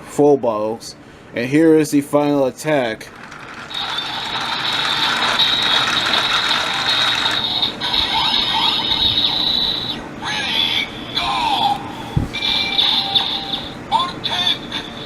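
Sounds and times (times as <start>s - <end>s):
toy belt electronic sound effect: 3.1s - 10.0s, 12.4s - 15.0s.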